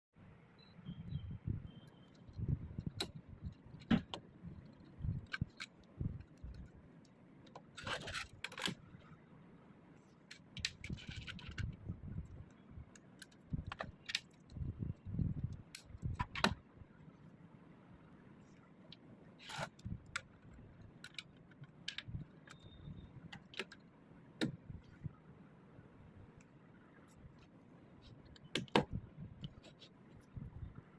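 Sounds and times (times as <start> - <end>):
plastic parts clicking and rattling: 2.1 - 9.1, 10.2 - 11.9, 12.9 - 14.6, 18.9 - 24.6.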